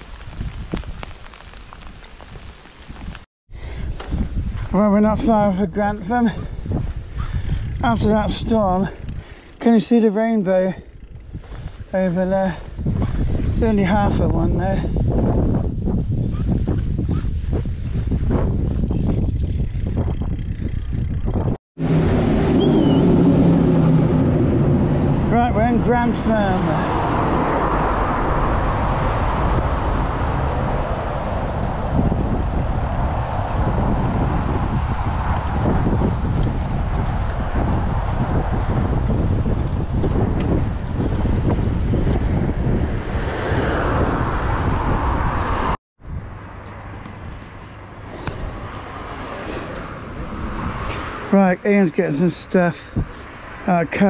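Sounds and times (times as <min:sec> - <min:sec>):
town traffic noise: 0:00.0 - 0:54.0
wind buffeting microphone: 0:00.0 - 0:54.0
quiet outdoor background: 0:46.0 - 0:54.0.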